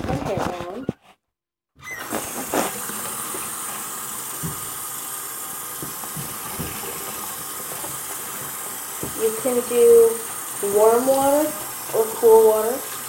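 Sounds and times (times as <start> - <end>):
tap water running into a sink: 2.0 - 13.0.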